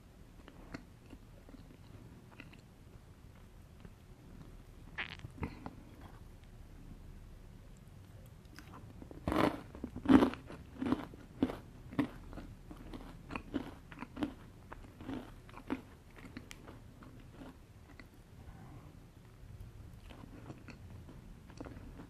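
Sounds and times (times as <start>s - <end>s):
person chewing: 3.8s - 6.3s, 7.7s - 18.2s, 19.9s - 22.0s.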